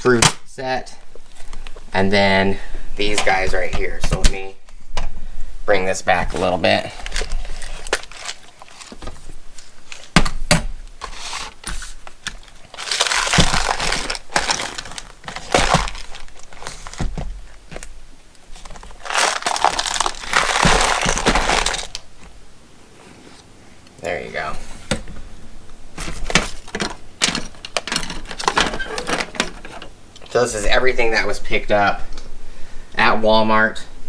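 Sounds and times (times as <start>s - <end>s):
clicks and knocks of packages: 6.1s - 22.4s, 25.9s - 30.4s
plastic packages crinkling: 6.1s - 22.4s, 25.0s - 30.4s.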